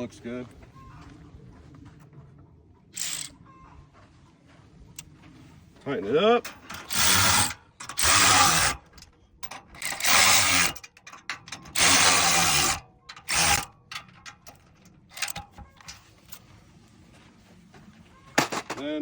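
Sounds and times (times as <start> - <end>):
power driver tightening nuts: 3.0 - 3.3, 6.5 - 16.4.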